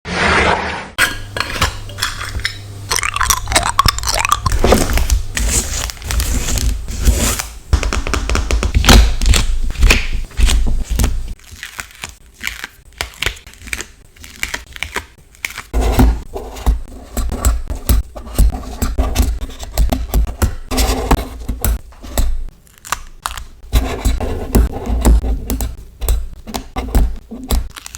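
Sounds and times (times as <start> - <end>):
stickers peeling and crackling: 4.0 - 15.8, 21.6 - 27.9.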